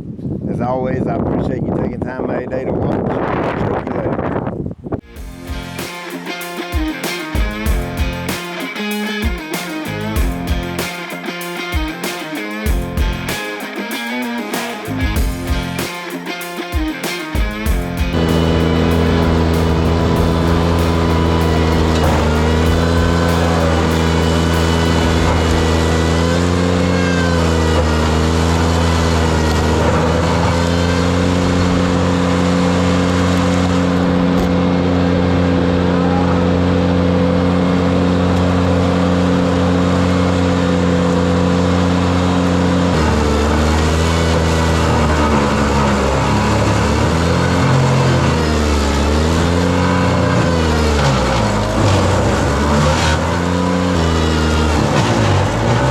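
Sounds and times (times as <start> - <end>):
tractor engine running hard: 18.0 - 55.9.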